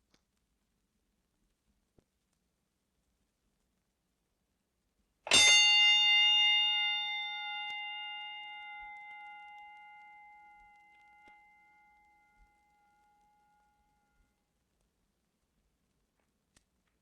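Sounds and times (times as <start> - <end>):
boxing bell ringing: 5.3 - 14.2.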